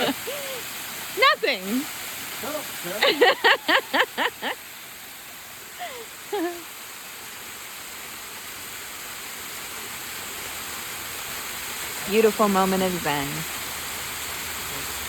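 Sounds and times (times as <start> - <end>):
person laughing: 0.0 - 0.6, 3.0 - 4.6, 5.8 - 6.6
waterfall rushing: 0.0 - 15.0.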